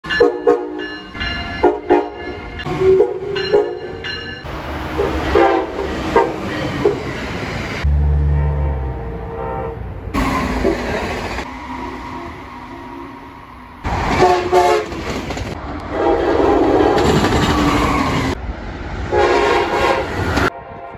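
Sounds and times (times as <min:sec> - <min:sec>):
passing train rumble and clatter: 0:00.0 - 0:20.9
locomotive air horn blasts: 0:00.2 - 0:00.8, 0:01.6 - 0:03.9, 0:05.3 - 0:06.4, 0:07.9 - 0:10.1, 0:14.1 - 0:15.0, 0:15.9 - 0:17.2, 0:19.1 - 0:20.9.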